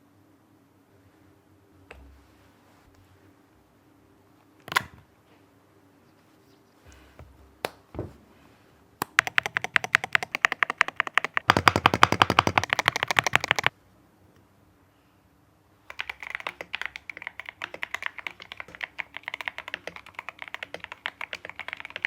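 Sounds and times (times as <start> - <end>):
fast typing on mechanical keyboard: 9.1 - 13.7, 15.9 - 22.0.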